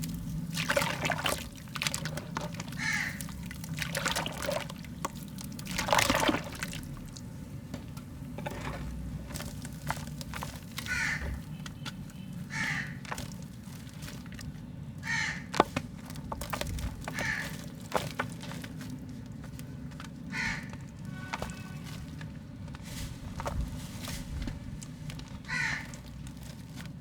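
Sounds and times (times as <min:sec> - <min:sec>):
mud crumbling clicks and snaps: 0:00.0 - 0:27.0
harsh bird calls: 0:02.6 - 0:03.3, 0:10.8 - 0:11.8, 0:12.4 - 0:13.0, 0:15.0 - 0:15.5, 0:25.4 - 0:26.0.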